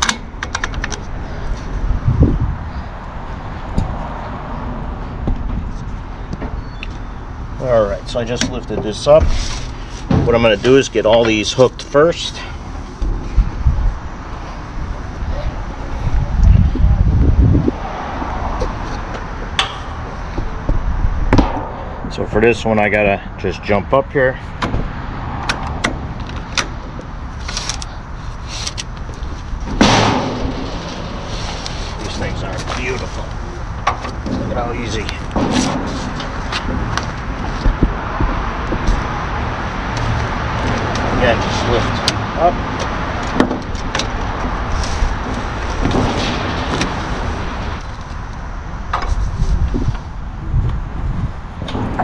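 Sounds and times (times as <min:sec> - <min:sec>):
low outdoor rumble: 0:00.0 - 0:52.0
scraping rush: 0:27.3 - 0:42.0.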